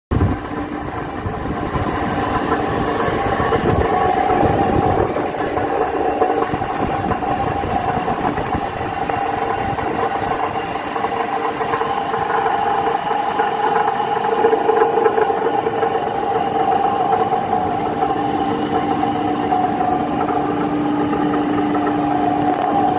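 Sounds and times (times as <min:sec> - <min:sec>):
gearbox whining: 0:00.1 - 0:22.9
rattling grind: 0:00.2 - 0:22.9.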